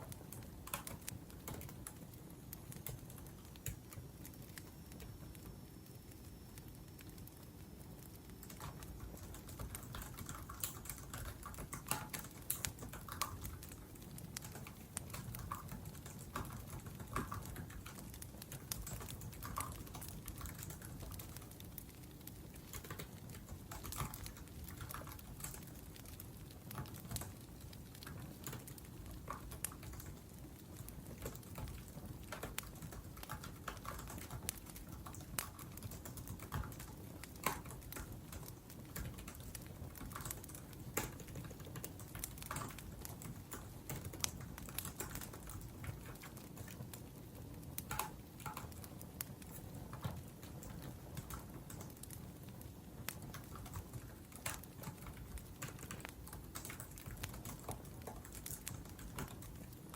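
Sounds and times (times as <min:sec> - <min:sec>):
wood fire crackling: 0:00.0 - 0:59.9
laptop keyboard typing: 0:08.3 - 0:46.8.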